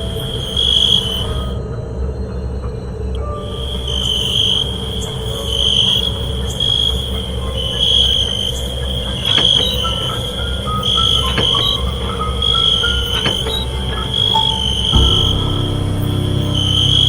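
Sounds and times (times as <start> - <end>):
faint higher tones: 9.9 - 17.0
low rumbling drone: 11.8 - 17.0
high shrill pulsing tone: 14.6 - 17.0.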